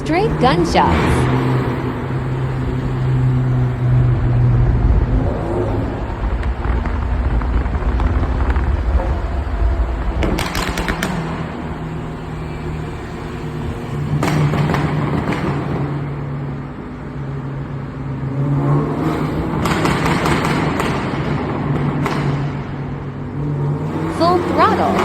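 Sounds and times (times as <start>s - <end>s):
car engine running in a tunnel: 0.0s - 25.0s
exhaust pops and bangs: 6.0s - 12.2s, 13.8s - 16.6s, 19.2s - 23.3s.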